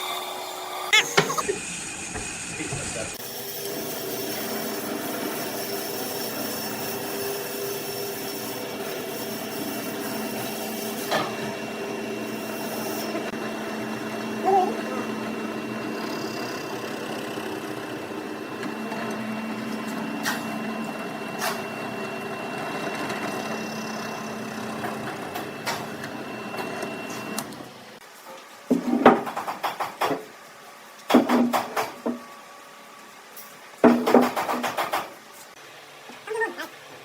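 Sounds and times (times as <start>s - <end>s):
woodworking power tool running: 0.0s - 28.0s.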